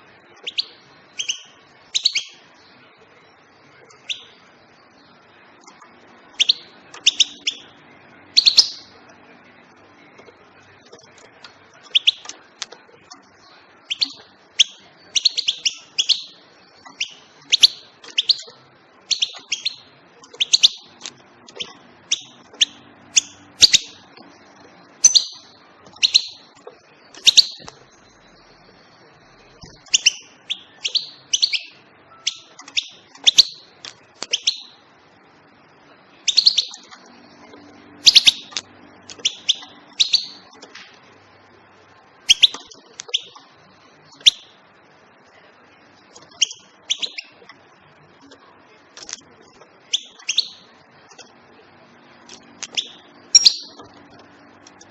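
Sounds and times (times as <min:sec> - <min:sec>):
goldfinch chirping and twittering: 0:00.4 - 0:02.4, 0:06.3 - 0:08.9, 0:11.8 - 0:12.4, 0:13.8 - 0:24.0, 0:24.9 - 0:28.6, 0:29.6 - 0:34.8, 0:36.2 - 0:40.7, 0:42.3 - 0:43.5, 0:46.1 - 0:47.4, 0:49.9 - 0:51.3, 0:52.3 - 0:54.2.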